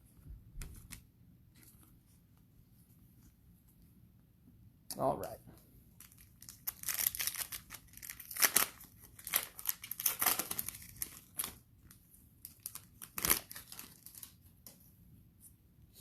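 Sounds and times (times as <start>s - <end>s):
plastic wrapper tearing and crinkling: 6.0s - 14.4s.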